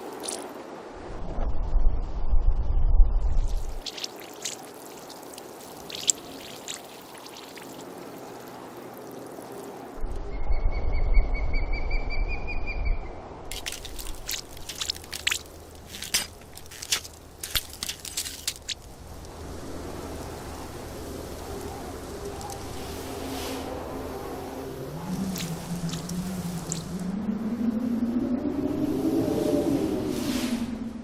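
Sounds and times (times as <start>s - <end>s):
water splashes: 0.0s - 0.5s, 3.5s - 10.0s, 13.5s - 23.3s, 24.6s - 27.0s
low rumble: 0.9s - 3.8s, 22.9s - 31.0s
water drips: 3.5s - 10.0s, 13.5s - 19.4s, 21.4s - 22.8s, 25.0s - 27.0s
water trickling: 3.5s - 10.0s, 13.5s - 22.8s, 25.0s - 27.0s.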